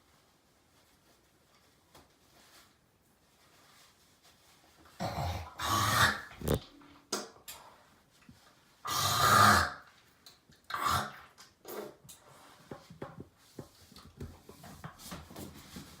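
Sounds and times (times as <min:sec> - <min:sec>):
man hawking up phlegm: 0:06.3 - 0:06.6.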